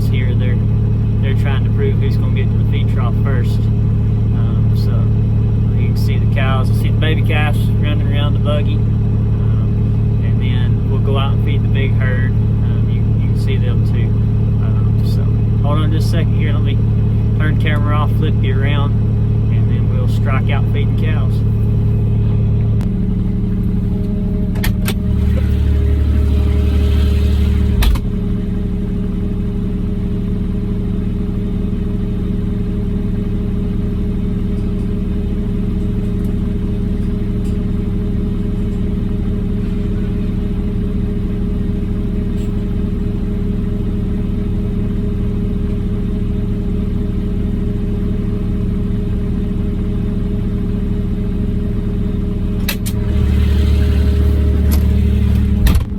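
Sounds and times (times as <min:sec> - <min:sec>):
diesel engine running: 0:00.0 - 0:55.9
brief heavier rumble: 0:21.6 - 0:28.8.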